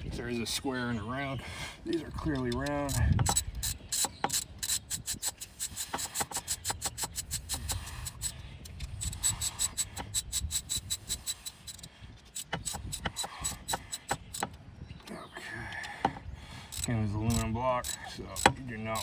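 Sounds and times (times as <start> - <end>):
ratchet wrench clicking: 2.3 - 14.6, 16.7 - 19.0.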